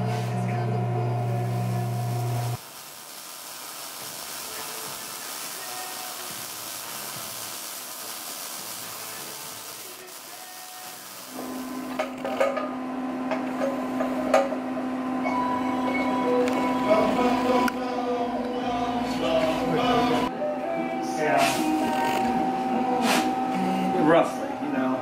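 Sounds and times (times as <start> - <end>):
machine hum: 0.0 - 3.4
steady hiss: 2.6 - 11.8.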